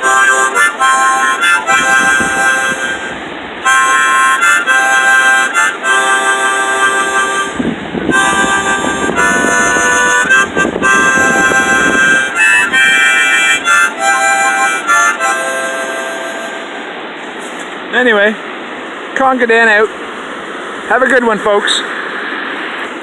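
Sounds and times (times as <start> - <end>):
harmonica playing chords: 0.0 - 17.4
river rapids rushing: 0.0 - 23.0.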